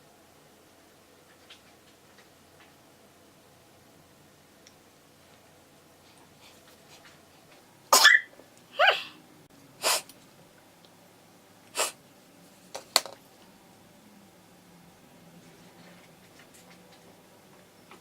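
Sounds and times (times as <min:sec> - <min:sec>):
person sneezing: 0:07.9 - 0:09.2, 0:09.8 - 0:10.1, 0:11.8 - 0:12.0.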